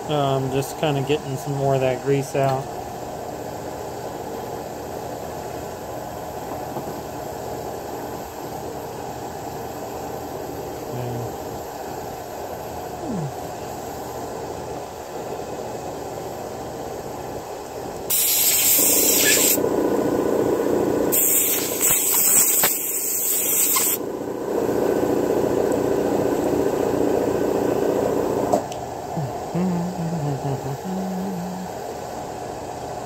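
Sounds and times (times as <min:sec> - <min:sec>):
aerosol spray hissing: 0:18.1 - 0:19.6, 0:21.1 - 0:24.0.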